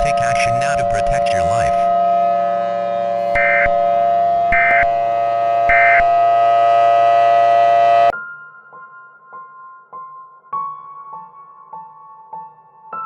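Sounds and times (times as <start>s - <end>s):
warbling data bursts: 0.0s - 2.0s, 3.2s - 6.8s
steady siren-like tone: 0.0s - 8.1s.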